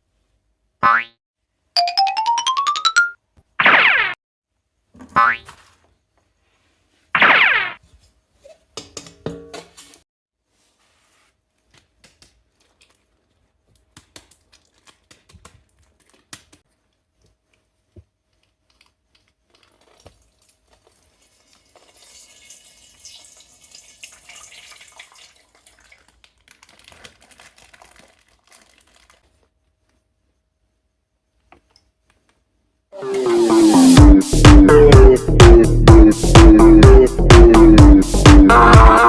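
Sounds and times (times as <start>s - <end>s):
plastic bags crinkling: 11.6s - 17.6s, 25.5s - 29.5s
running liquid: 19.6s - 27.1s.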